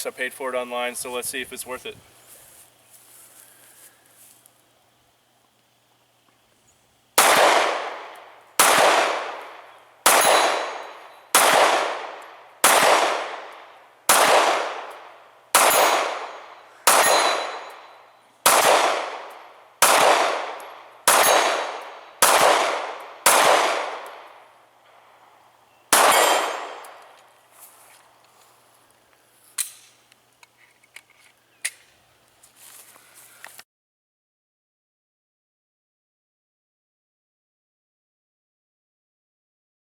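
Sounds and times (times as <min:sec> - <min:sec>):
pistol shots echoing: 0:07.2 - 0:24.5, 0:25.9 - 0:27.1.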